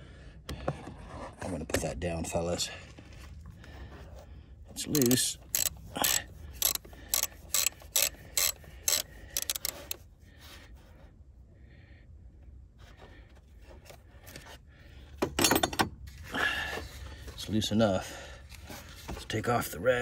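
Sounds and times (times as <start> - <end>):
ratchet wrench clicking: 4.8 - 10.0.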